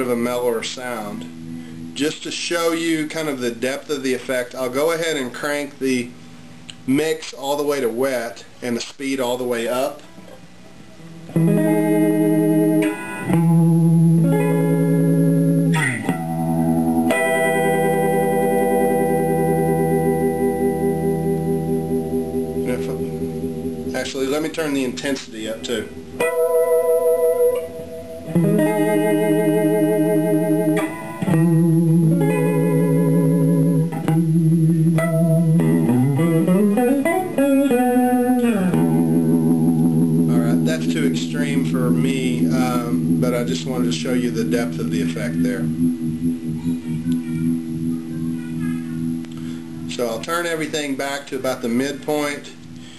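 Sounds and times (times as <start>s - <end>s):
electric guitar chords: 0.0s - 4.1s, 10.1s - 51.0s
guitar slide between chords: 1.2s - 2.0s, 25.8s - 49.9s.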